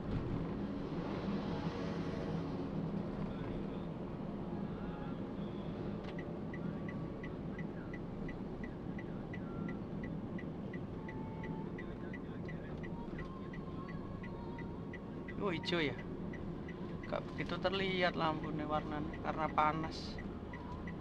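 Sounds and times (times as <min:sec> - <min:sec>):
engine and road noise: 0:00.0 - 0:21.0
indicator ticking: 0:12.5 - 0:21.0.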